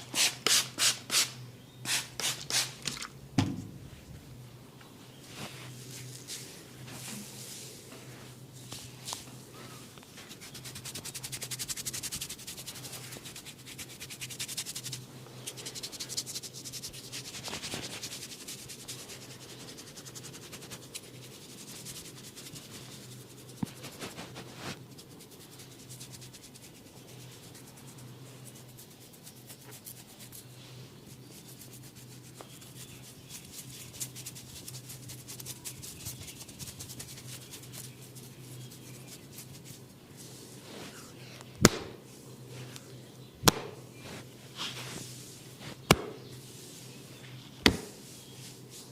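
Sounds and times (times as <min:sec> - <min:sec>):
steady low hum: 0:00.0 - 0:48.9
hands rubbing skin and hair: 0:05.2 - 0:09.4, 0:10.0 - 0:30.5, 0:31.2 - 0:41.4, 0:43.5 - 0:48.9.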